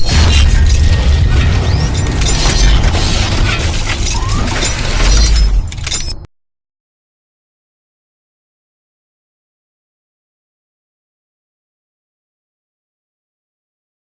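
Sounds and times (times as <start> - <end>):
crashing shattering sound effects: 0.0 - 6.3.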